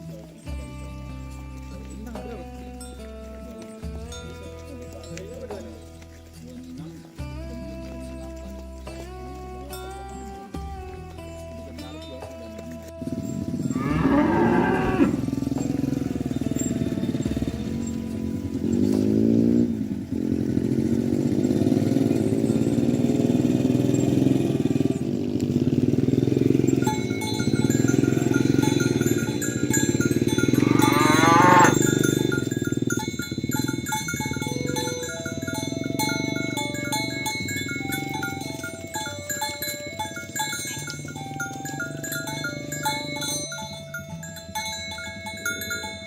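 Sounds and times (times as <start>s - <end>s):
cattle mooing: 13.6s - 19.6s, 25.7s - 32.5s.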